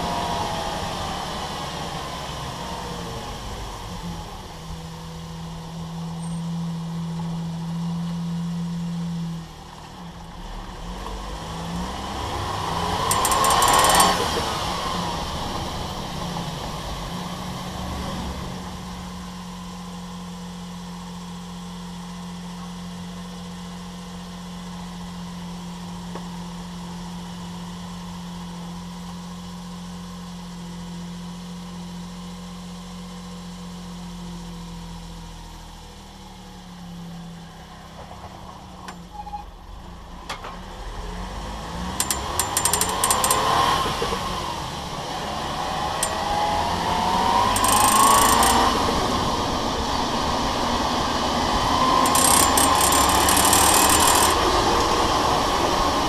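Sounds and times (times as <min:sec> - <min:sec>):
car engine humming: 0:00.0 - 0:21.2, 0:36.8 - 0:56.0.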